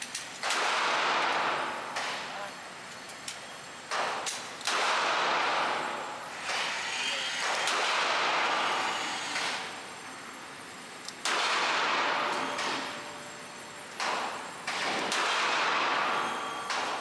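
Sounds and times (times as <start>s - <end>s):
handgun shots: 0.4s - 2.2s, 3.9s - 5.6s, 7.4s - 8.4s, 11.2s - 13.0s, 14.0s - 17.0s.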